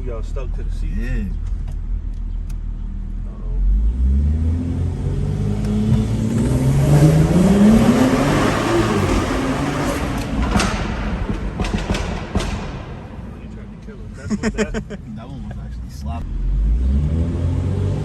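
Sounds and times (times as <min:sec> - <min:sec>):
road and wind noise: 0:00.0 - 0:18.0
car engine revving under acceleration: 0:01.4 - 0:11.4, 0:16.0 - 0:18.0.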